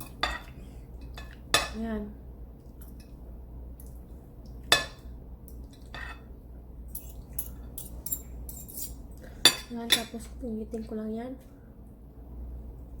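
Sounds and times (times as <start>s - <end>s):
utensils clinking on plate: 0.0s - 1.8s, 5.7s - 6.3s, 6.9s - 10.3s.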